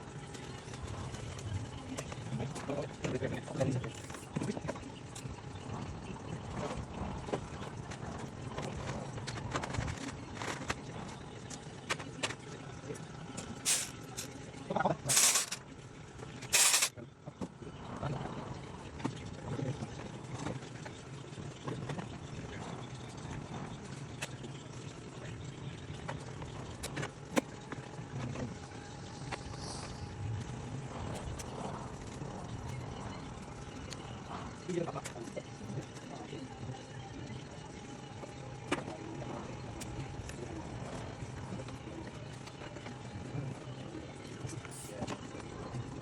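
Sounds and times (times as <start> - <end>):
steady low background hum: 0.0 - 46.0
tools clicking and knocking: 15.1 - 15.6, 16.6 - 16.9.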